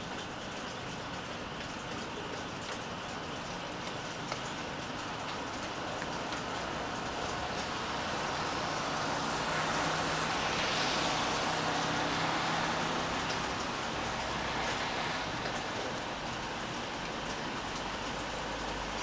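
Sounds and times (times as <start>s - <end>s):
steady rain falling: 0.0s - 19.0s
water drips: 0.0s - 19.0s
car tyres hissing on wet road: 4.8s - 19.0s.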